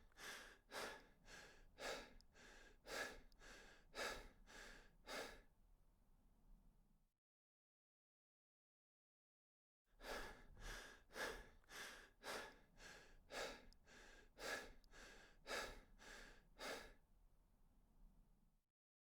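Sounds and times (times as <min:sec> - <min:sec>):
rapid rhythmic breathing sound: 0:00.0 - 0:05.5, 0:10.0 - 0:17.0.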